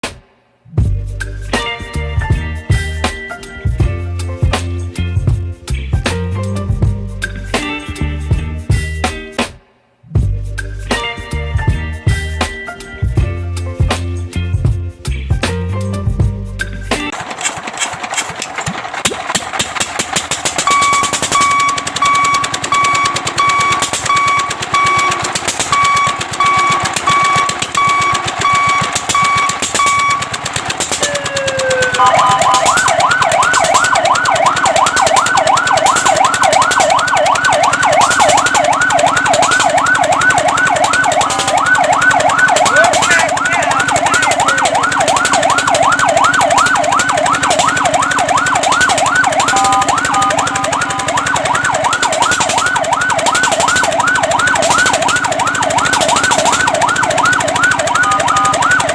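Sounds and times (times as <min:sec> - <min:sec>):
fire truck electronic siren: 0:20.0 - 0:58.9.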